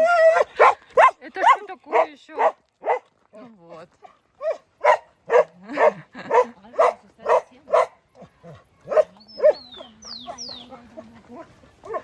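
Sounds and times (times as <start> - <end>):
dog barking: 0.2 - 3.1, 4.4 - 10.6.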